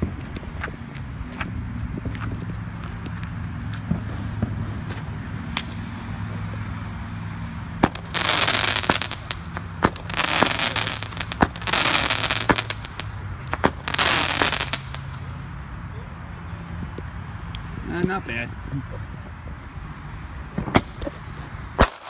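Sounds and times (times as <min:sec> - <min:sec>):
firework crackling: 0:03.7 - 0:15.7, 0:20.7 - 0:22.0
firework shots: 0:03.7 - 0:15.7, 0:20.6 - 0:22.0.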